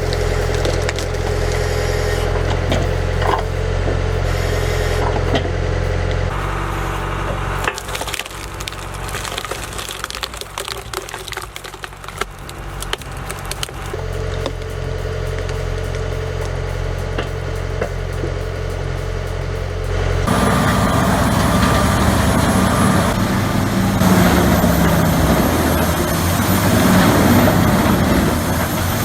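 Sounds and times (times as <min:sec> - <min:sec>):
wood cracking and splintering: 0:00.0 - 0:03.6, 0:07.2 - 0:14.7
wood splitter droning: 0:00.0 - 0:29.0.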